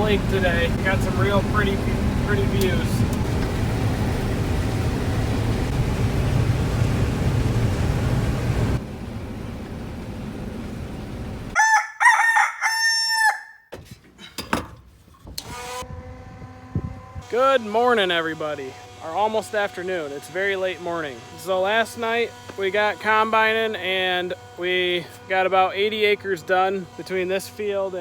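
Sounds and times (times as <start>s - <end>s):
combine harvester rumble: 0.0s - 11.6s
rooster crowing: 11.6s - 13.6s.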